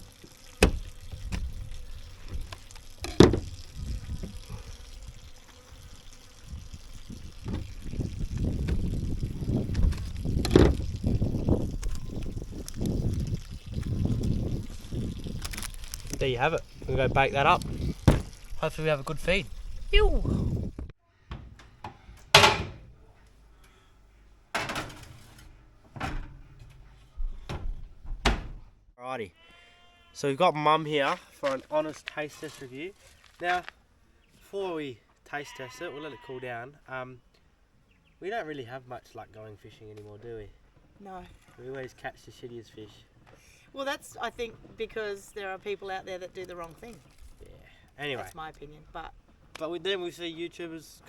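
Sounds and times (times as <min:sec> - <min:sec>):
kitchen clunks and knocks: 0:03.0 - 0:03.5, 0:18.0 - 0:18.4, 0:21.3 - 0:23.0, 0:24.5 - 0:28.7.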